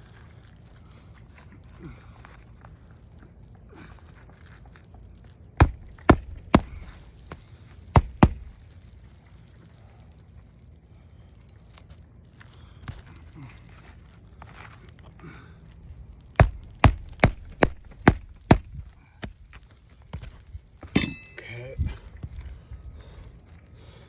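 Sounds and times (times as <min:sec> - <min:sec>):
hammer strikes on shingle roof: 0:05.6 - 0:06.9, 0:07.9 - 0:08.6, 0:16.4 - 0:19.3.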